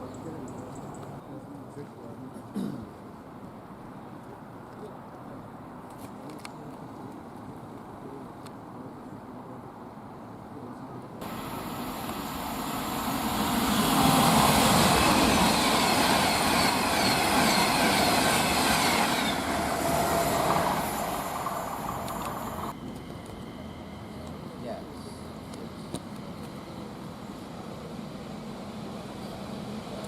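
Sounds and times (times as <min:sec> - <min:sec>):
train wheels rushing on rail: 0:11.2 - 0:30.0.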